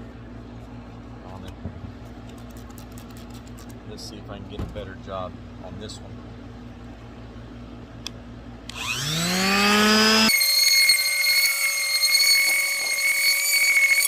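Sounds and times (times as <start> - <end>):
electric sander whining: 8.7 - 14.0.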